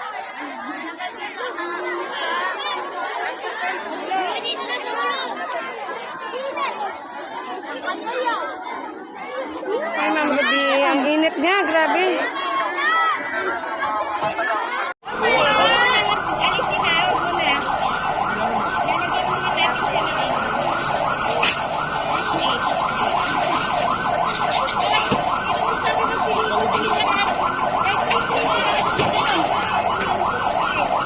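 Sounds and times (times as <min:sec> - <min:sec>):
faint voices: 0:00.0 - 0:31.0
electronic siren yelping: 0:15.1 - 0:31.0.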